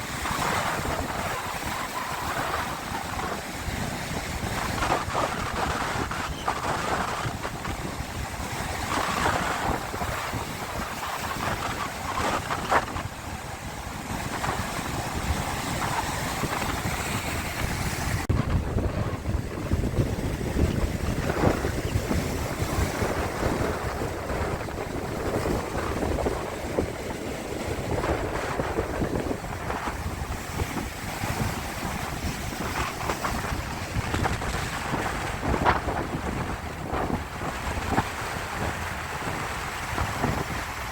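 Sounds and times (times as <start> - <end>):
sea waves splashing: 0.0 - 40.9
wind buffeting microphone: 0.0 - 40.9.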